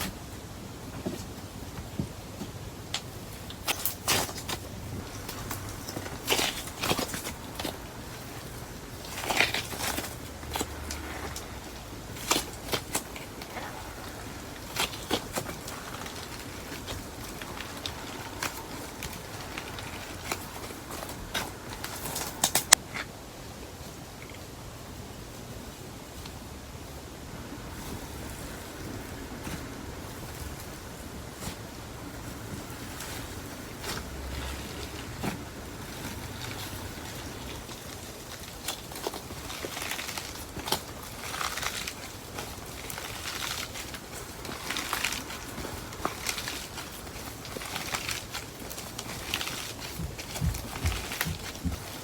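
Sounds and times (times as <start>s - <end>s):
slime kneaded by hand: 27.5s - 52.0s.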